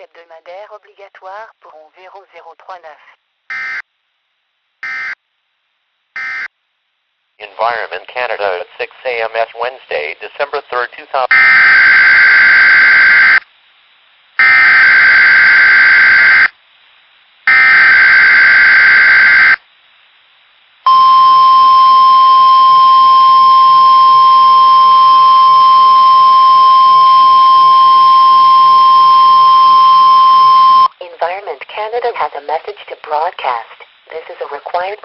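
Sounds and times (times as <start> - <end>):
data bursts: 3.5 - 3.8, 17.5 - 19.6, 20.9 - 30.9.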